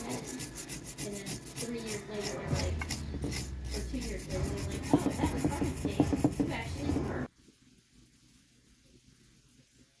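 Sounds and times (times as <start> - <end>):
rubbing strokes by hand: 0.0 - 7.3.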